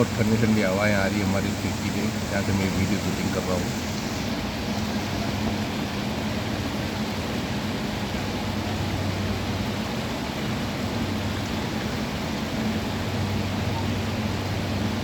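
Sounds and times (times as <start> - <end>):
low steady hum: 0.0 - 5.9
heavy rain: 0.0 - 15.0
wind: 0.0 - 15.0.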